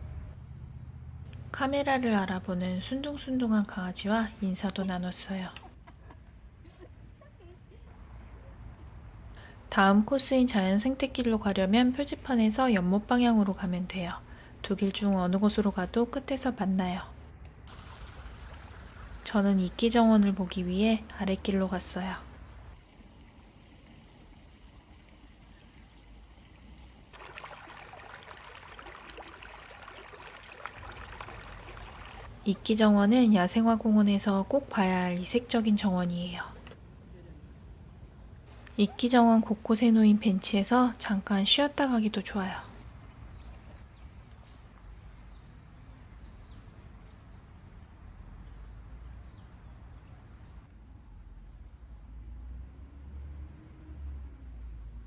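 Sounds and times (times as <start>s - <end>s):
low background rumble: 0.0s - 27.2s
water trickling: 17.7s - 35.9s, 38.5s - 50.7s.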